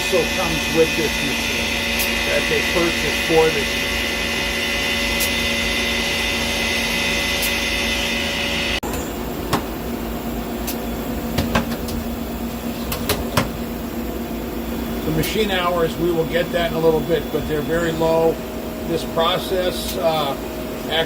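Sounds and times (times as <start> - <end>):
low machine hum: 0.0 - 21.0
machine whine: 0.0 - 21.0
sharp clicks and knocks: 11.4 - 12.0, 12.8 - 13.6.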